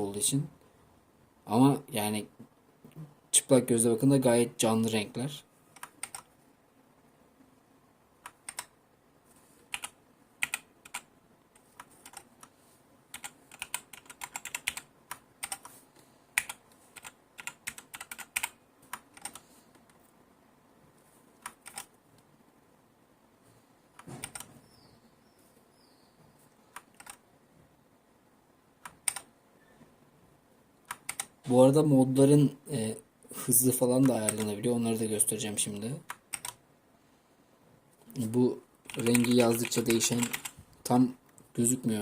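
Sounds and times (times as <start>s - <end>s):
mechanical keyboard keys clicking: 5.8s - 6.3s, 8.3s - 8.7s, 9.7s - 12.5s, 13.1s - 15.7s, 16.4s - 19.4s, 21.4s - 21.9s, 24.0s - 24.5s, 26.7s - 27.2s, 28.8s - 29.3s, 30.9s - 31.3s, 36.1s - 36.6s, 38.9s - 40.6s.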